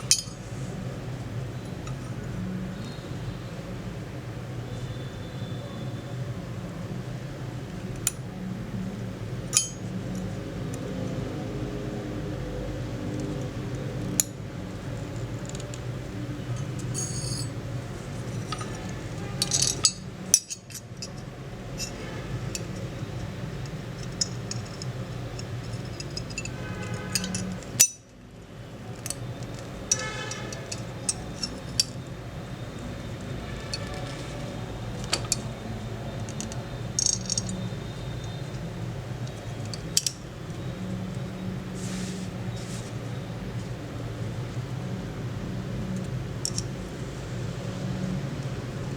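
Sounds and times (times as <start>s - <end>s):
metallic clicks of steel parts: 0.0s - 0.5s, 9.5s - 10.9s, 14.1s - 14.4s, 16.5s - 17.6s, 18.2s - 28.2s, 28.9s - 32.1s, 33.0s - 41.3s, 45.9s - 46.9s.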